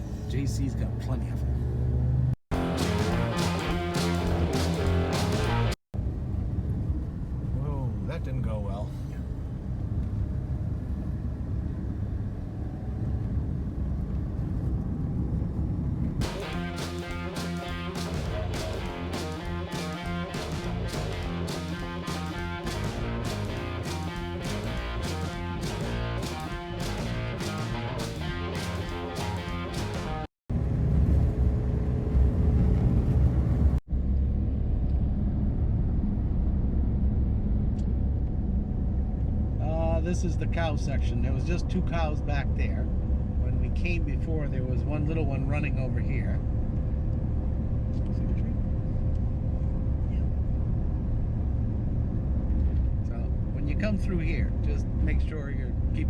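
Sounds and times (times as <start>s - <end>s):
car engine and tyre rumble: 0.0s - 56.0s
guitar music: 2.5s - 5.8s, 16.2s - 30.3s.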